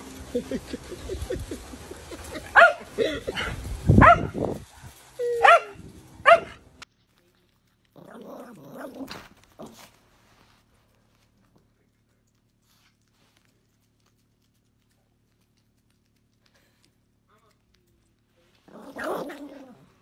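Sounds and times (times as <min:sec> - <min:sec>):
dog barking: 0:02.5 - 0:04.4, 0:05.4 - 0:06.6.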